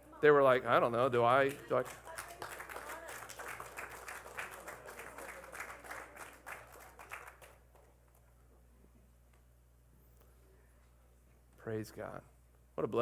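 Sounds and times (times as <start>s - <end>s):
faint steady hum: 0.0s - 13.0s
congregation clapping: 1.2s - 8.3s.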